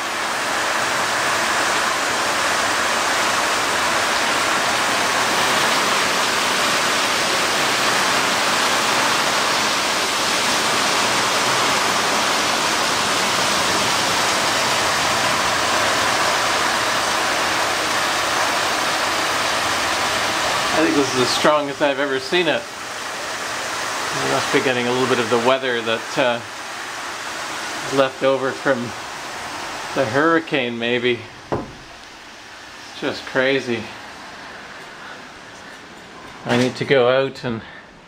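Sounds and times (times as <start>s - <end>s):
very heavy rain: 0.0s - 37.0s.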